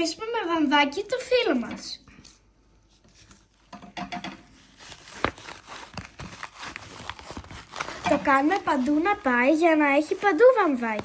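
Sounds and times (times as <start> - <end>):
paper and tape crinkling: 4.5 - 11.0.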